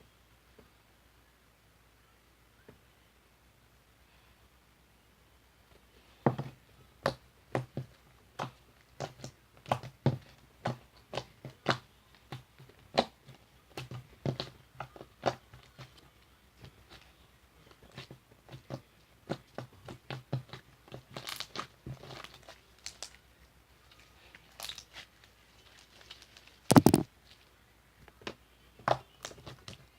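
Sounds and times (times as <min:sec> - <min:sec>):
slime squishing with clicking pops: 0:26.0 - 0:27.1.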